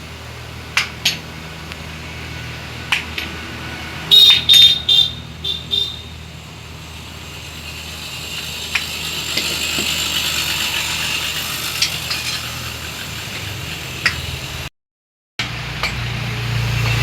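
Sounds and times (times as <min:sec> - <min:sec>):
machine hum: 0:00.0 - 0:14.7
hissing noise: 0:03.4 - 0:14.7.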